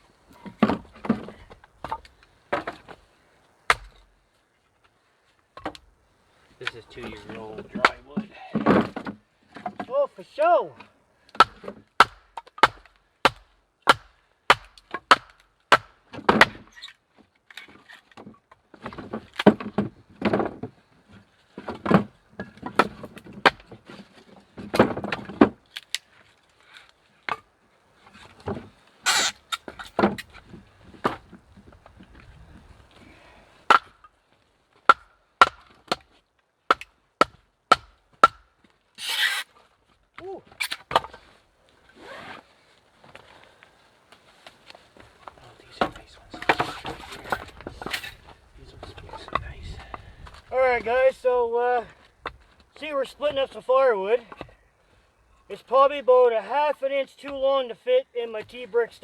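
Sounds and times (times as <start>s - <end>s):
axe strikes on wood: 3.7s - 4.0s, 11.4s - 16.7s, 33.7s - 34.0s, 34.9s - 36.1s, 36.7s - 38.5s.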